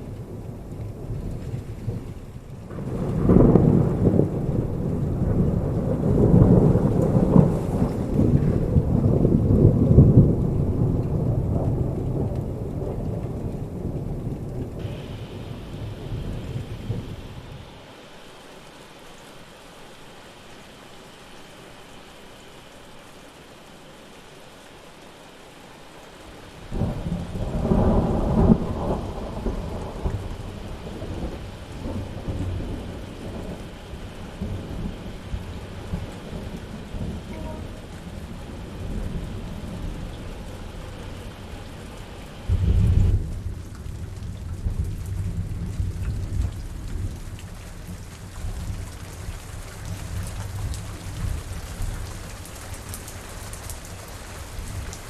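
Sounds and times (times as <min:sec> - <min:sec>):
steady rain: 0:00.0 - 0:55.0
thunderclap rolling into rumbling: 0:00.2 - 0:17.8, 0:26.7 - 0:47.3.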